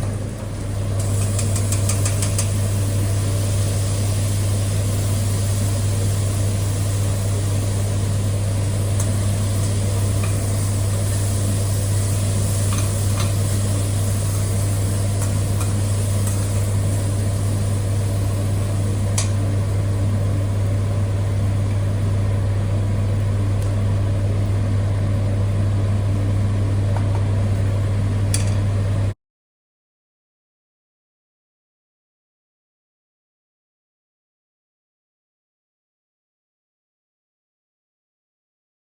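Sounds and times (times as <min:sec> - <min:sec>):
low machine hum: 0:00.0 - 0:29.2.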